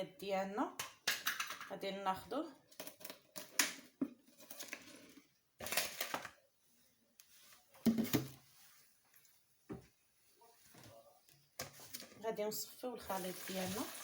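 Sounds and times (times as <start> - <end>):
kitchenware knocking and clattering: 1.0 - 1.7, 7.9 - 8.4.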